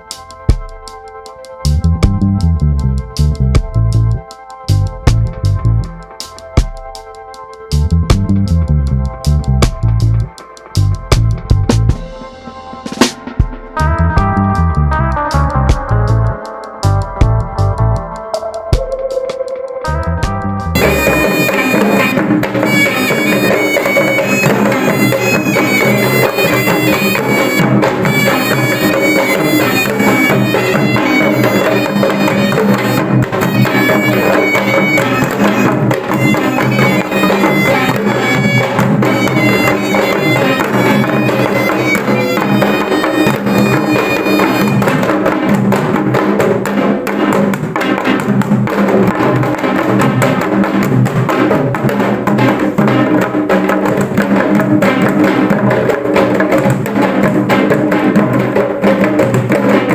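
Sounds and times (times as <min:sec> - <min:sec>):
drums: 0:00.0 - 0:59.9
reedy wind instrument melody: 0:12.0 - 0:18.5, 0:19.8 - 0:45.3.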